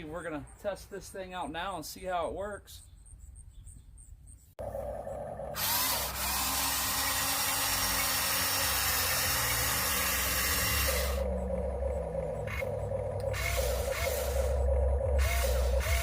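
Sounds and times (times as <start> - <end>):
toy crane motor and gearbox: 5.6 - 11.3, 12.5 - 14.6, 15.2 - 16.0
quiet hum: 9.2 - 16.0.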